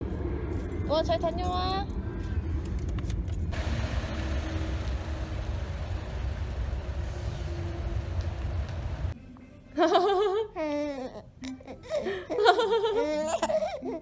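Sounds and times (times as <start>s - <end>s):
vehicle engine rumbling: 1.8s - 9.2s
road noise hiss: 3.5s - 9.2s.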